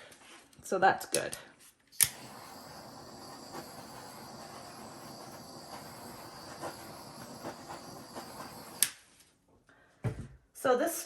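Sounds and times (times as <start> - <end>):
torch flame hissing: 1.9 - 9.0.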